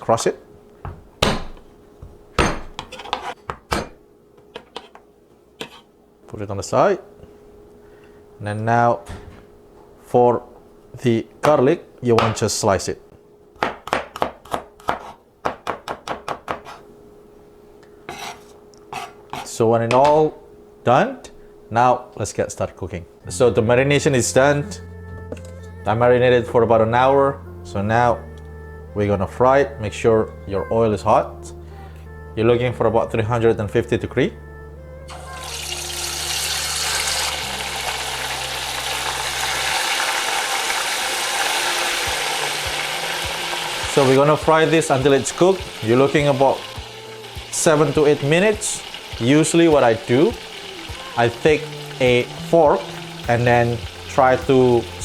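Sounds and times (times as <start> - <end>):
low hum: 23.1 - 55.0
chicken deep-frying in oil: 35.1 - 55.0.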